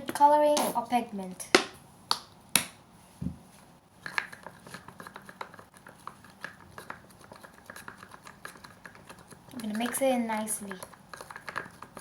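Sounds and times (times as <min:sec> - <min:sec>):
stick stirring thick glue: 0:04.0 - 0:12.0.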